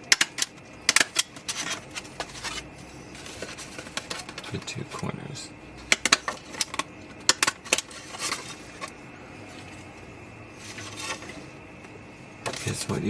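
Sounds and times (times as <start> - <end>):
handling noises: 0.0 - 5.2, 5.8 - 13.0.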